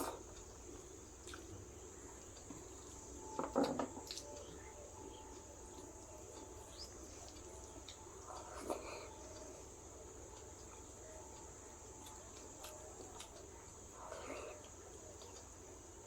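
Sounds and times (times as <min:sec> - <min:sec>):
mouth chewing and smacking: 0:00.0 - 0:03.0, 0:12.0 - 0:15.5
high-pitched background whine: 0:00.0 - 0:16.0.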